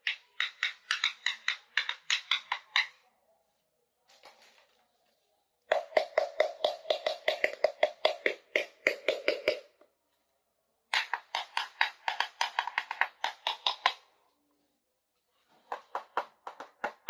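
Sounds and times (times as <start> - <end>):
light tapping on plastic toys: 0.0 - 3.0, 10.9 - 14.0.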